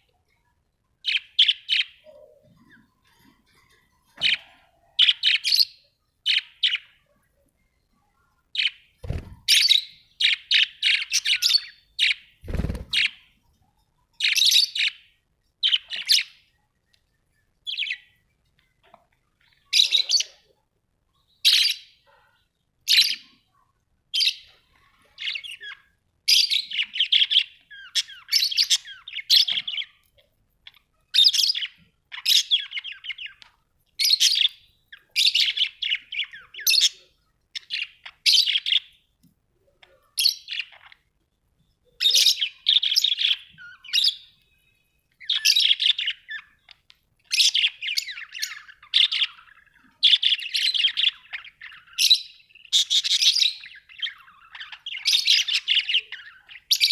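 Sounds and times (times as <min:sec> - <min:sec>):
budgerigars chirping: 0:08.6 - 0:13.2, 0:34.0 - 0:38.9, 0:42.0 - 0:44.4, 0:45.2 - 0:56.9.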